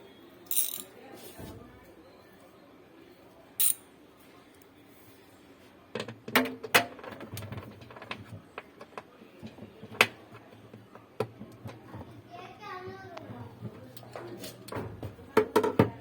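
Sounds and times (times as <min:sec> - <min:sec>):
tools clicking and knocking: 0:00.5 - 0:00.9, 0:03.6 - 0:03.8.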